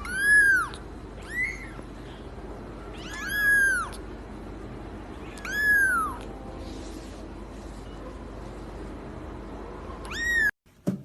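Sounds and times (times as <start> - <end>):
cat meowing: 0.0 - 1.8, 2.8 - 4.0, 5.2 - 6.3, 10.0 - 10.5.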